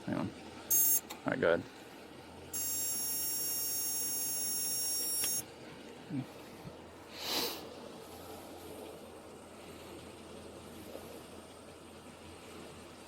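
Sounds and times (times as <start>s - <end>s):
high-pitched breath tester tone: 0.7s - 1.1s, 2.6s - 5.4s
short hiss: 7.2s - 7.6s.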